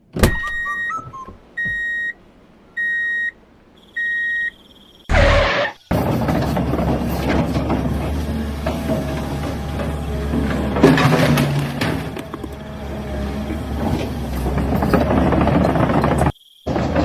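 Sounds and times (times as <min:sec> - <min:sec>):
electronic beeps: 0:00.3 - 0:02.2, 0:02.8 - 0:05.9
short loud noise burst: 0:05.1 - 0:05.8.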